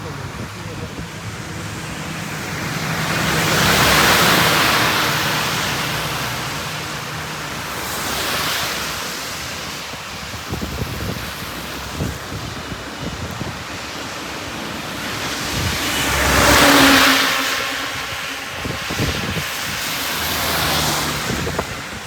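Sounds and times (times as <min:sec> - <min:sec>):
heavy rain on wet road: 0:00.0 - 0:22.0
vehicle passing: 0:00.0 - 0:22.0.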